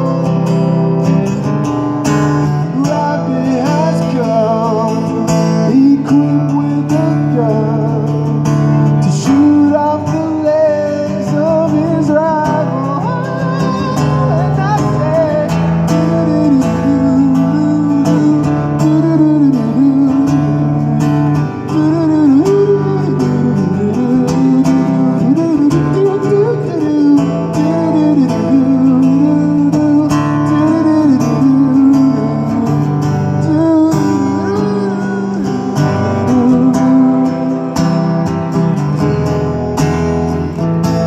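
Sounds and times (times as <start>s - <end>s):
acoustic guitar strumming: 0.0s - 41.0s
person singing: 2.3s - 8.4s, 9.0s - 38.8s.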